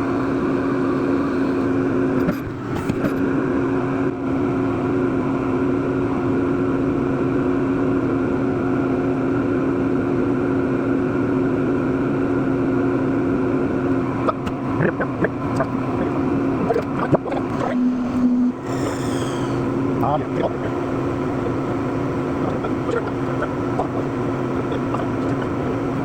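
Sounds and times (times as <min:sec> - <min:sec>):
lathe humming with steady tones: 0:00.0 - 0:02.7, 0:15.4 - 0:26.0.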